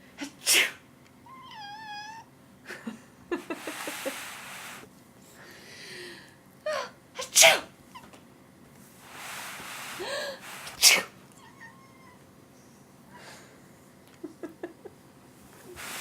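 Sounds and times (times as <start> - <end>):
person sneezing: 0.2 - 0.8, 7.2 - 7.7, 9.8 - 11.1.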